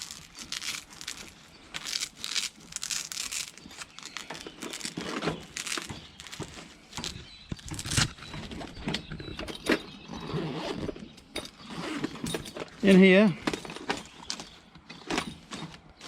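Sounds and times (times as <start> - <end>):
cloth bag rustling: 0.0 - 8.8.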